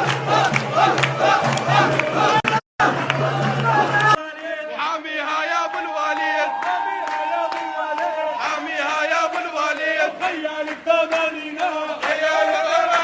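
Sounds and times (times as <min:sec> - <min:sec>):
hand clapping: 0:00.0 - 0:04.2, 0:05.7 - 0:12.3
crowd chanting: 0:00.0 - 0:13.0.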